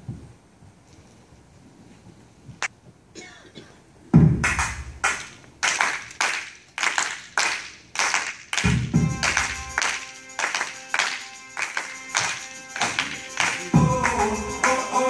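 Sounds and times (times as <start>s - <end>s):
percussive beat: 4.2s - 5.8s, 8.6s - 15.0s.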